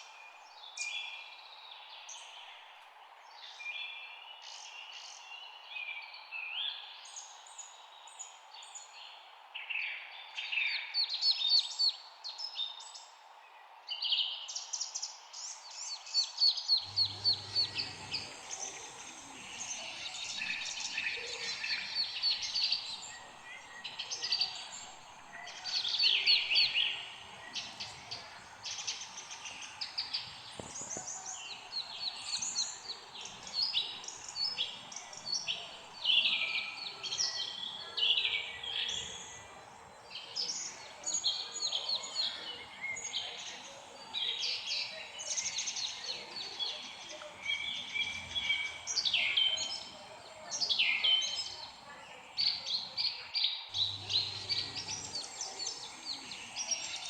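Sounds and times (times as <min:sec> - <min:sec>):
songbirds chirping and trilling: 0:00.0 - 0:57.0
background hiss: 0:15.8 - 0:53.0, 0:53.7 - 0:57.0.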